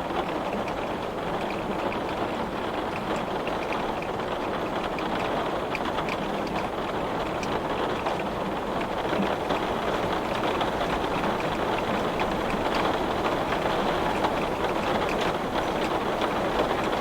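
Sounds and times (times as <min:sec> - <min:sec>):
heavy rain pattering on glass: 0:00.0 - 0:17.0.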